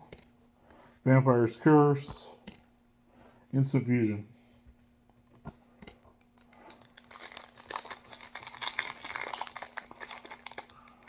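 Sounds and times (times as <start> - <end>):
wrapper crinkling and rustling: 6.4 - 11.0.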